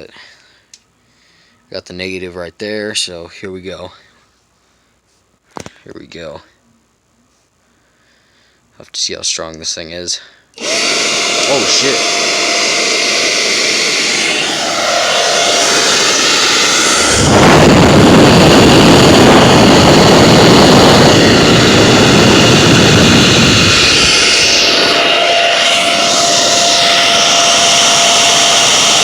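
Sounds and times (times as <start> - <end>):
air blower rushing with whine: 10.6 - 29.0.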